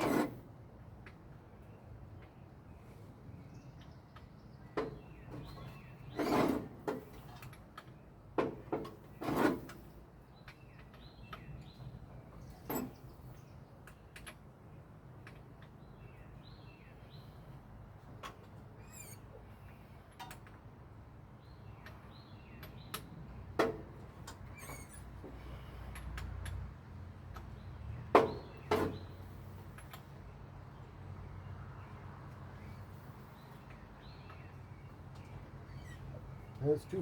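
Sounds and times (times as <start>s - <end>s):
wrench knocks and scrapes: 0.0s - 0.4s, 4.8s - 9.9s
faint ticks and squeaks: 3.7s - 8.0s, 18.2s - 20.4s, 24.2s - 25.6s, 32.5s - 37.0s.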